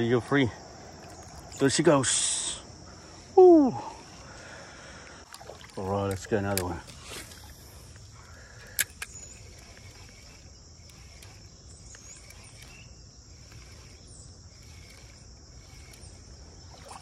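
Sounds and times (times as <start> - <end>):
insects trilling: 0.0 - 17.0
flowing water: 3.7 - 8.8, 13.3 - 17.0.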